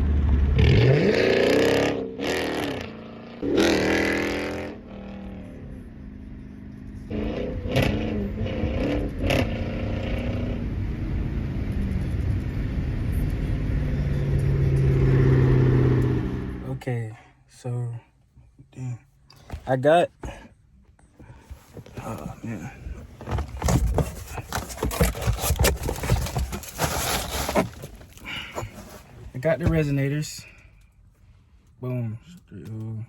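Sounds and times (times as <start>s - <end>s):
car engine revving with loud exhaust: 0.0s - 16.6s.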